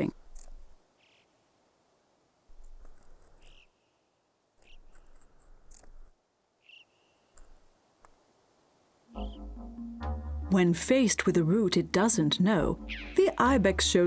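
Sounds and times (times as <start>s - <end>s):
high bird chirps: 12.8s - 13.5s.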